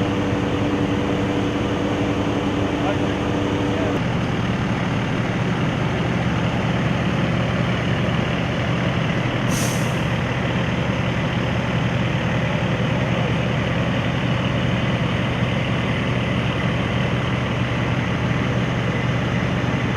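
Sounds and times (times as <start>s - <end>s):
large engine humming: 0.0s - 19.9s
short hiss: 9.5s - 10.0s.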